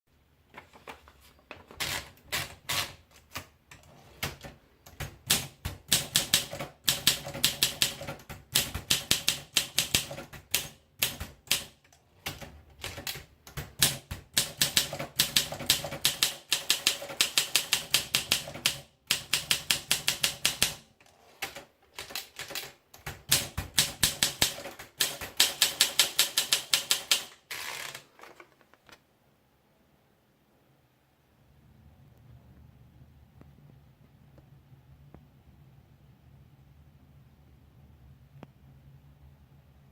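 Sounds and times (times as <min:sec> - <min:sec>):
typewriter key strikes: 0:22.0 - 0:27.4.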